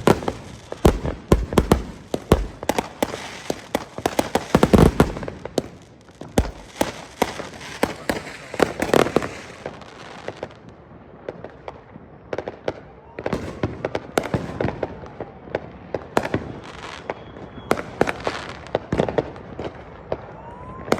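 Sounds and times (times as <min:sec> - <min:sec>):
gunshots: 0:00.0 - 0:03.2, 0:06.4 - 0:09.2.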